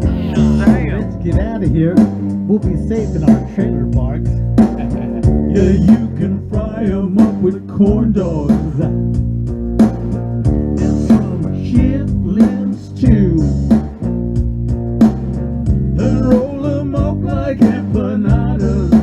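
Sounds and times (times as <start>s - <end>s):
steady beat: 0.0s - 6.2s
bass guitar: 0.0s - 19.0s
blues guitar with bending notes: 0.0s - 19.0s.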